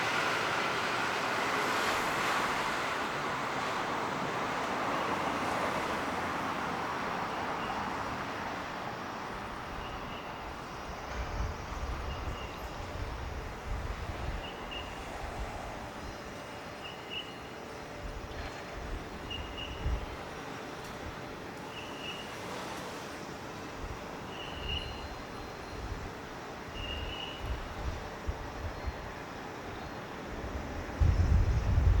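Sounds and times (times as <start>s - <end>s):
wind buffeting microphone: 9.3s - 16.4s, 17.9s - 21.4s, 23.7s - 32.0s.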